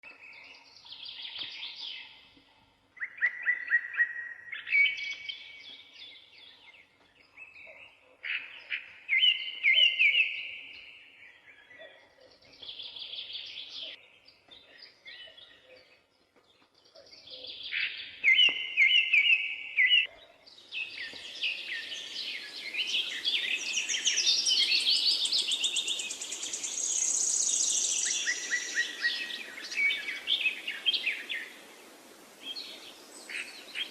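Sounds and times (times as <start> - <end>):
chorus of overlapping birdsong: 0.0 - 33.9
songbirds trilling: 0.1 - 33.9
steady hiss: 21.0 - 33.9.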